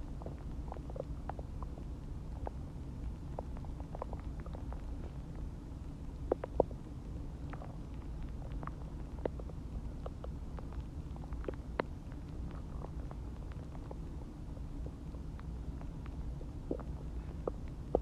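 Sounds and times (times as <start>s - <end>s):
stomach gurgling: 0.0s - 18.0s.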